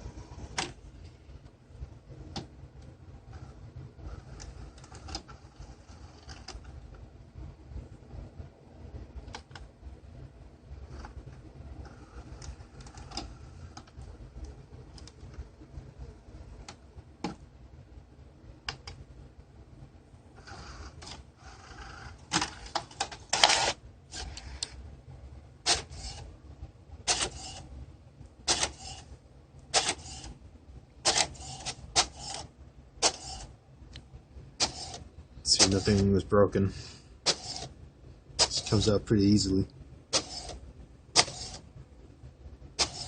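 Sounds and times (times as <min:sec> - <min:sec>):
printer mechanical clicks: 0:34.6 - 0:36.1, 0:40.2 - 0:40.6, 0:41.2 - 0:41.6, 0:42.8 - 0:43.0.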